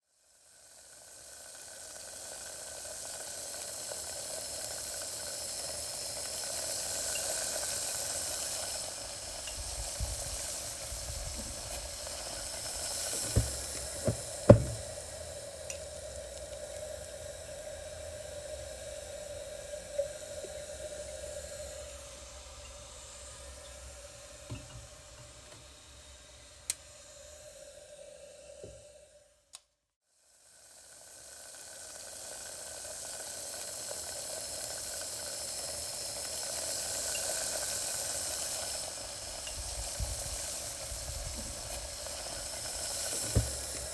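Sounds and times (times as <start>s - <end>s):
water boiling: 0.3s - 25.6s, 30.5s - 43.9s
sharp pops: 13.1s - 15.0s.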